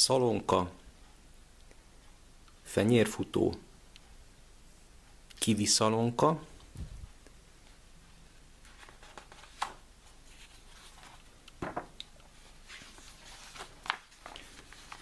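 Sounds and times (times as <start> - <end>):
faint handling noises: 6.6 - 15.0.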